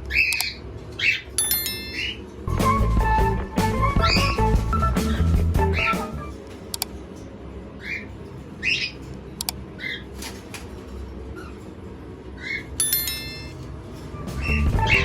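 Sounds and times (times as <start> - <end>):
cockatiels chirping and squawking: 0.0 - 2.2, 7.8 - 9.1, 9.8 - 10.1, 12.4 - 12.8.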